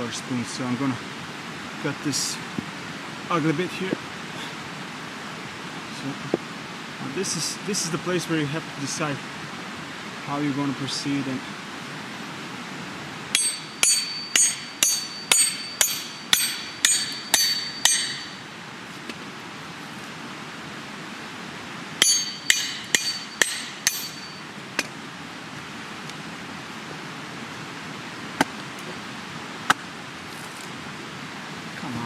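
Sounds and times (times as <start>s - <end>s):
hand tools striking log: 13.3s - 18.4s, 22.0s - 24.9s.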